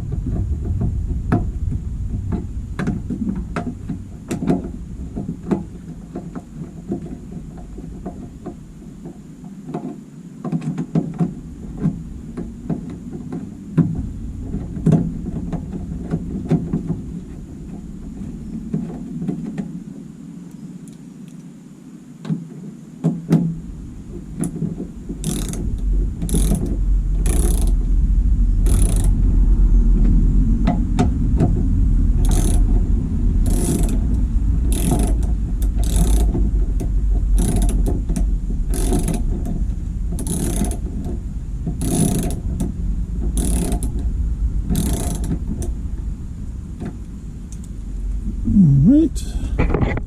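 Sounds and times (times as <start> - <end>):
low rumble: 0.0 - 5.5, 27.9 - 35.6, 45.7 - 49.7
ratchet wrench clicking: 25.2 - 25.6, 27.3 - 27.7, 28.7 - 29.1, 35.8 - 36.3, 40.2 - 40.7, 43.4 - 43.8.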